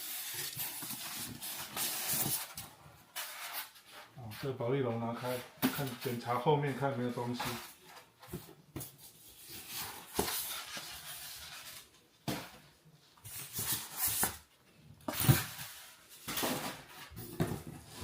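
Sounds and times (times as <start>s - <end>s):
styrofoam rustling and scraping: 0.0s - 8.0s, 8.8s - 12.0s.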